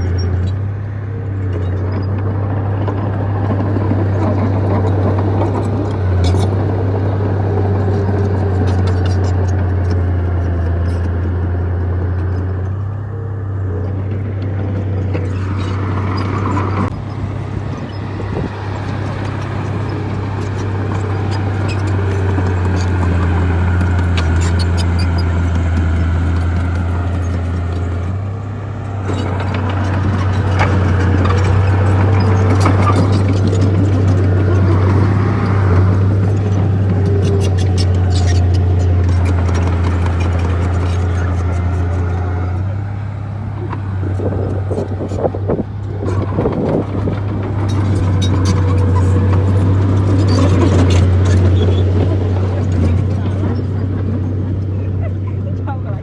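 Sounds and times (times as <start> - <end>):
bulldozer diesel engine droning: 0.0 - 56.0
clicks and clanks: 29.0 - 42.5.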